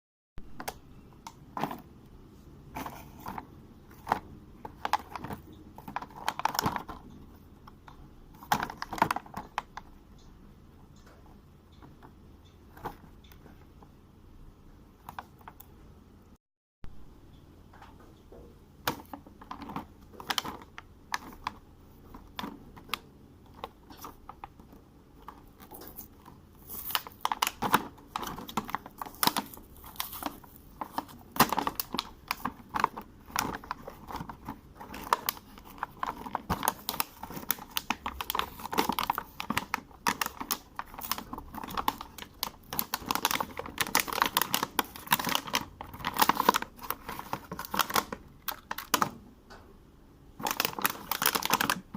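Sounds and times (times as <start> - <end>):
plastic packaging crinkling and tearing: 2.8 - 7.1, 18.9 - 49.2, 50.4 - 51.9.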